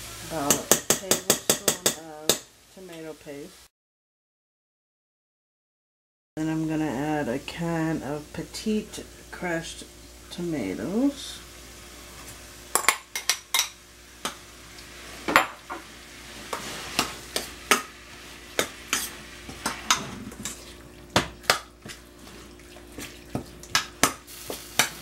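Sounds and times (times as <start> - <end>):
sauce sizzling: 0.0 - 3.7, 6.7 - 25.0
spoon scraping a pan: 15.2 - 20.8.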